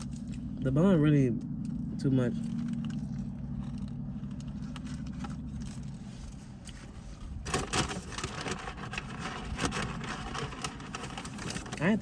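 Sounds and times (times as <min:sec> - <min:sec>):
steady low hum: 0:00.0 - 0:12.0
paper wrapping crinkling: 0:07.5 - 0:12.0.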